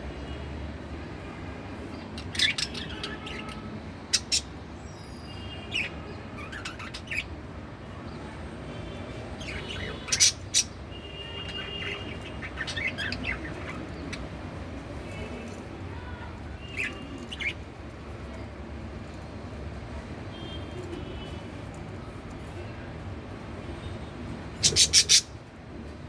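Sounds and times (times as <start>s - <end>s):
budgerigar chirping: 24.6s - 25.3s.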